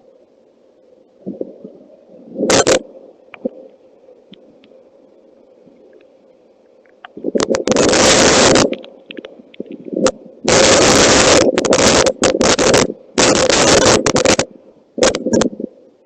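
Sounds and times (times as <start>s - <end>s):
steady low hum: 0.0s - 16.0s
harsh noise bursts: 2.4s - 2.8s, 7.2s - 8.9s, 9.9s - 15.5s.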